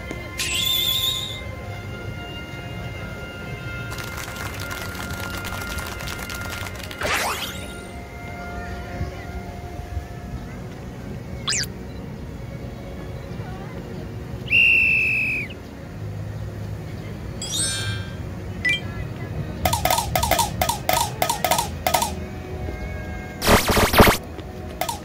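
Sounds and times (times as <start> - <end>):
falling whistle slide: 0.4 - 1.4, 11.5 - 11.7
whistle tone: 0.4 - 1.5, 5.5 - 8.1, 11.5 - 11.7, 14.5 - 15.6
pitched tapping blips: 11.5 - 11.7, 19.7 - 22.2, 23.4 - 24.2, 24.8 - 25.0.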